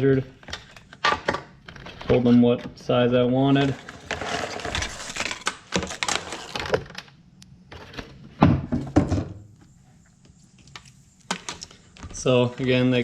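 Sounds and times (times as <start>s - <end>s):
packaging rustling and clatter: 3.6s - 7.1s.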